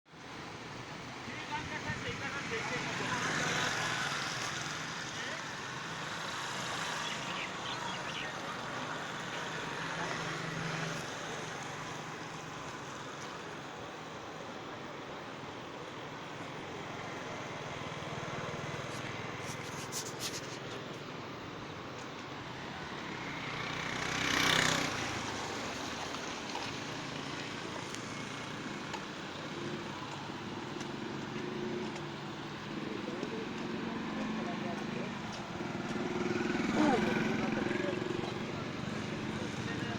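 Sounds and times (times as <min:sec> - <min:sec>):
flooding river rushing: 0:00.1 - 0:39.9
vehicle passing: 0:01.5 - 0:13.7, 0:22.4 - 0:39.9.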